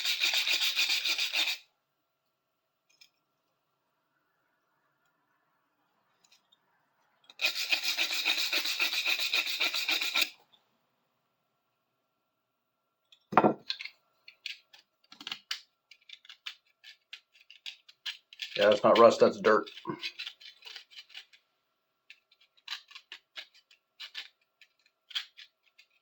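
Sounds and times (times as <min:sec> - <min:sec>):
brush scrubbing metal hinge: 0:07.3 - 0:10.3, 0:16.2 - 0:21.4.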